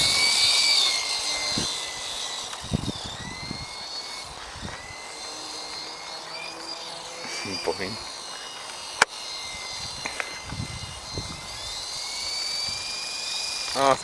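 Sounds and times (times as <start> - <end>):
wind buffeting microphone: 0.0 - 0.6, 1.3 - 5.0, 9.4 - 12.0
remote-control helicopter whining: 0.0 - 14.0.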